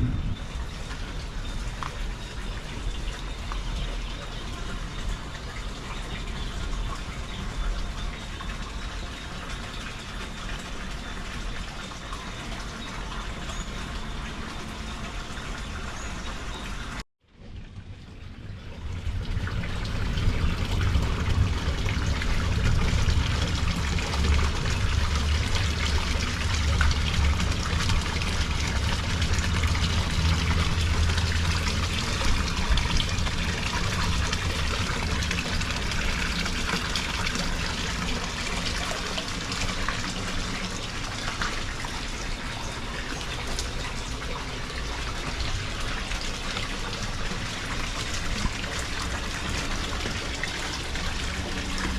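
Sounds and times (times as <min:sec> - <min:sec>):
low rumble: 0:00.0 - 0:01.8, 0:17.5 - 0:38.6
storm rain: 0:00.0 - 0:03.9, 0:17.8 - 0:51.9
running water: 0:00.0 - 0:17.0, 0:18.4 - 0:51.9.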